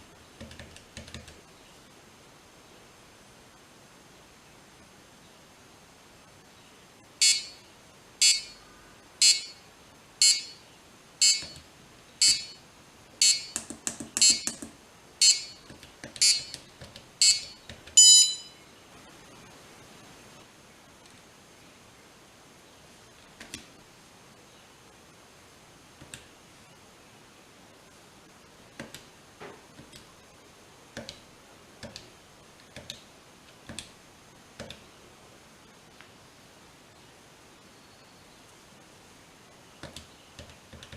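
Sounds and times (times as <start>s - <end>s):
electronic buzzer beeping: 7.2s - 7.6s, 8.2s - 8.6s, 9.2s - 9.6s, 10.2s - 10.6s, 11.2s - 11.6s, 12.2s - 12.6s, 13.2s - 13.6s, 14.2s - 14.5s, 15.2s - 16.6s, 17.2s - 18.6s
long high steady beep: 7.2s - 8.6s, 9.2s - 10.6s, 11.2s - 11.6s, 12.2s - 12.6s, 13.2s - 13.6s, 14.2s - 14.5s, 15.2s - 16.6s, 17.2s - 18.7s
keypad button clicks: 11.2s - 11.6s, 13.2s - 18.5s.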